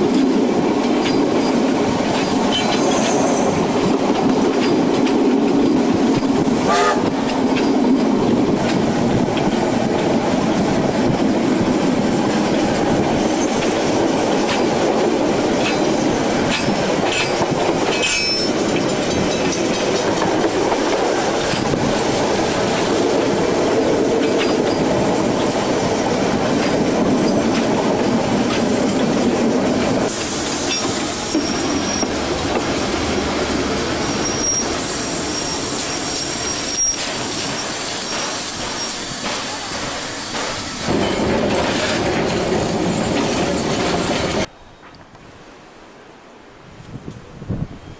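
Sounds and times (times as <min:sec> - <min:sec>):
train clanks: 0:00.0 - 0:45.2
train wheels clicking on rails: 0:00.0 - 0:45.2
hiss: 0:29.9 - 0:32.2, 0:34.0 - 0:41.0.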